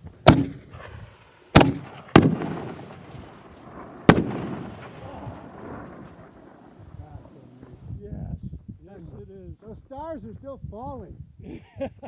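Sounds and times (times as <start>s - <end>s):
firework bangs: 0.2s - 7.8s.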